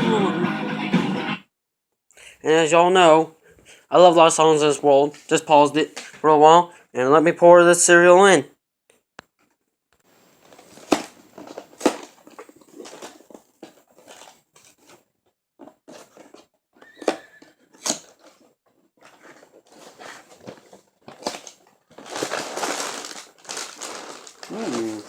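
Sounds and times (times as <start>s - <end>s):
packaging crinkling and rustling: 10.2s - 25.0s
cereal pouring into a bowl: 22.2s - 25.0s.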